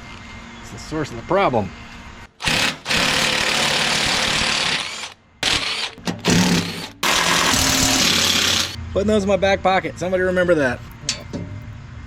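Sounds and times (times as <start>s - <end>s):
power driver running: 2.4s - 8.8s.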